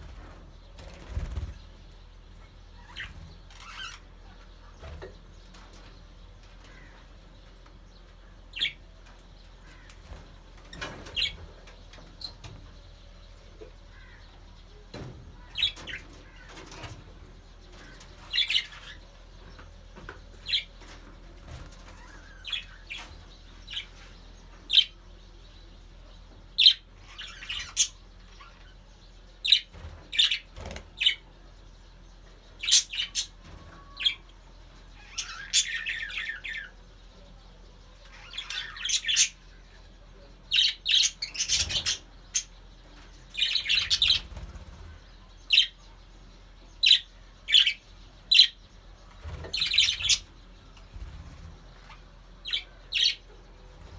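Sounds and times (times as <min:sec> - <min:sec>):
budgerigars chirping and warbling: 0:00.0 - 0:53.9.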